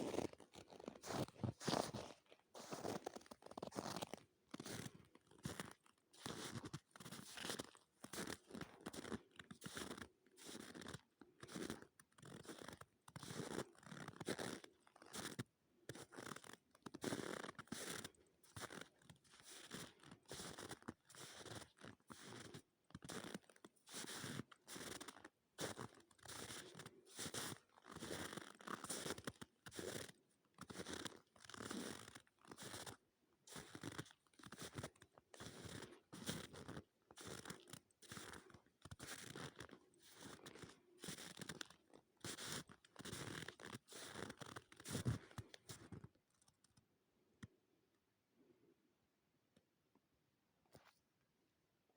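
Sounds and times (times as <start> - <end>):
footsteps squeaking in frozen snow: 0.0 - 4.9, 5.5 - 15.4, 35.4 - 45.9.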